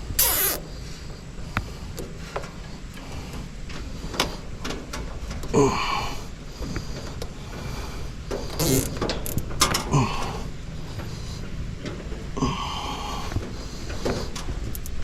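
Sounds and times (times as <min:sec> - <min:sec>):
hands clicking and knocking on parts: 0:08.3 - 0:10.3.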